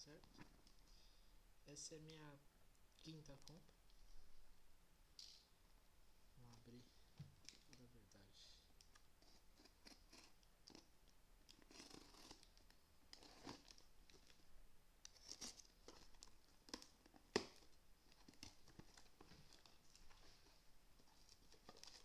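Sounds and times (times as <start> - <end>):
packaging tearing and crinkling: 11.5 - 14.4, 15.1 - 20.0, 21.2 - 22.0.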